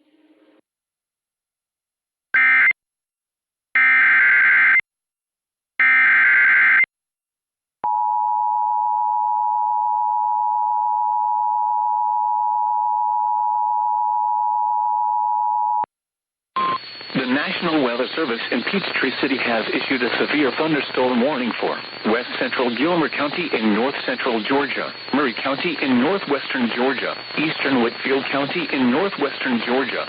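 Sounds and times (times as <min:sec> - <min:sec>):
two-tone attention signal: 0:16.6 - 0:17.9
screeching digital data bursts: 0:16.6 - 0:30.0.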